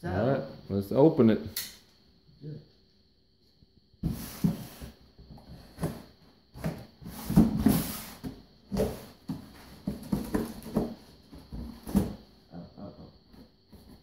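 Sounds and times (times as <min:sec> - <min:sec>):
cardboard boxes knocking: 0:04.0 - 0:12.2.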